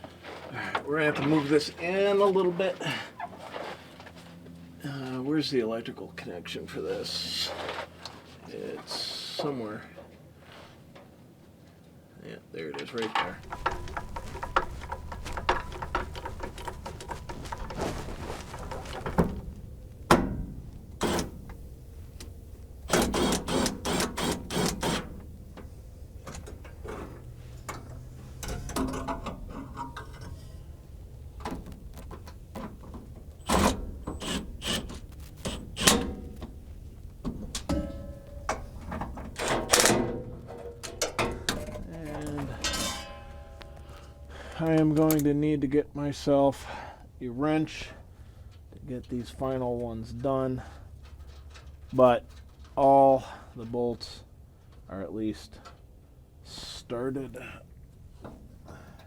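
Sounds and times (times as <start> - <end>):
metal clanks and rattles: 12.8 - 45.3.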